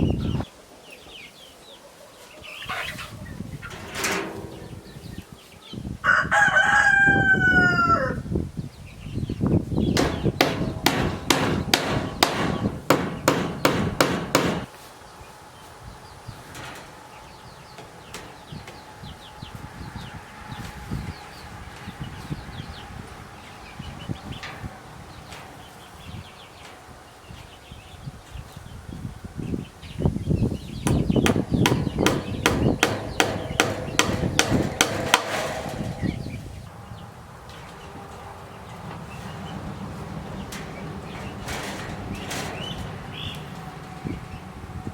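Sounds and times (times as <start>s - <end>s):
hammer blows on wood: 10.0s - 14.8s, 30.9s - 36.5s.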